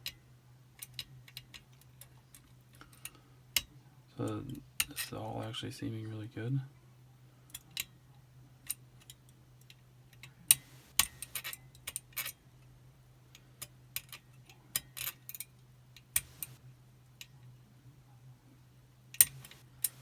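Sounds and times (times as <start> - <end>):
lock picking metallic clicks: 10.5 - 11.4, 16.2 - 16.6, 19.2 - 20.0
steady low hum: 10.5 - 11.4, 16.2 - 16.6, 19.2 - 20.0.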